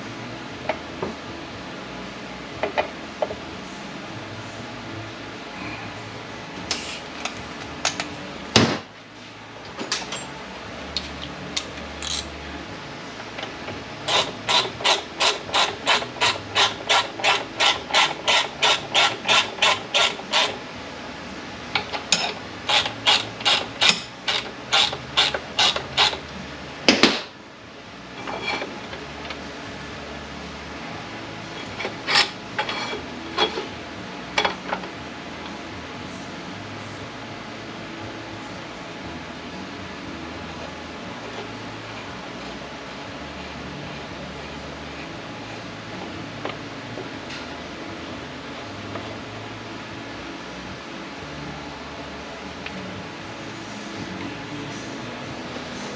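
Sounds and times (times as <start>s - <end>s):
ratchet wrench clicking: 11.6s - 12.3s, 14.1s - 20.6s, 21.8s - 26.2s.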